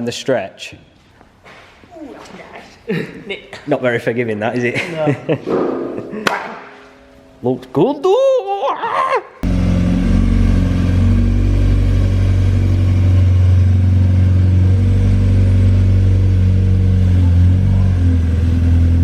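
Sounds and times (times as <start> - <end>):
car engine droning: 9.4 - 19.0.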